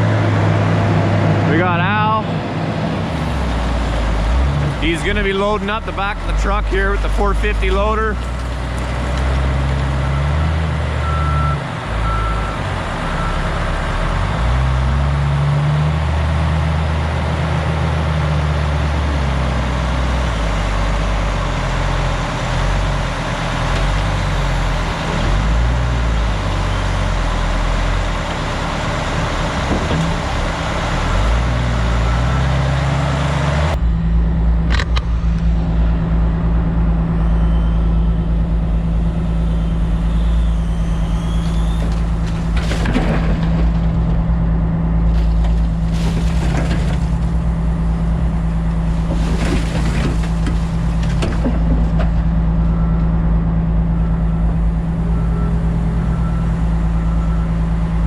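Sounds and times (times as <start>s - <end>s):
loader diesel engine revving: 0.0s - 58.0s
low diesel rumble: 0.0s - 58.0s
reversing alarm beeping: 10.0s - 13.5s.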